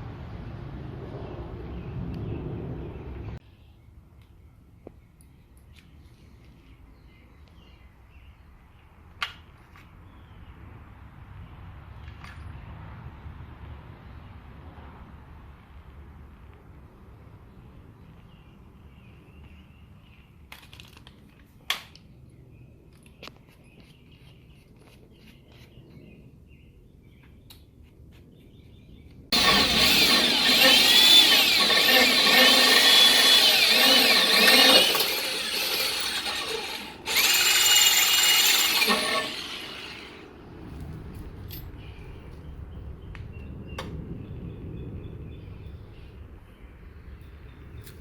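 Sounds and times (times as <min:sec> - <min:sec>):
power drill drilling into metal: 0:29.4 - 0:40.2.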